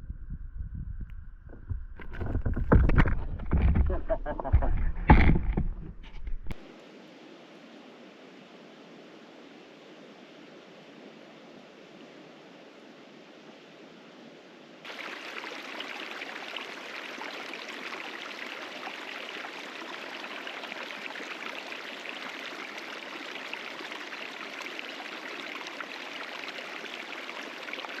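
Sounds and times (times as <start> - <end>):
small stream burbling: 6.0 - 28.0.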